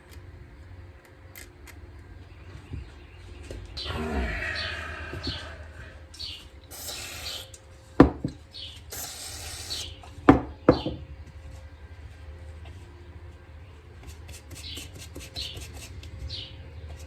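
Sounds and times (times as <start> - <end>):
short bursts of hiss: 6.7 - 7.5, 8.9 - 9.9.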